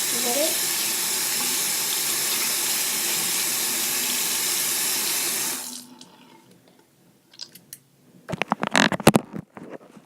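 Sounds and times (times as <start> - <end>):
water running from sink tap: 0.0 - 6.5.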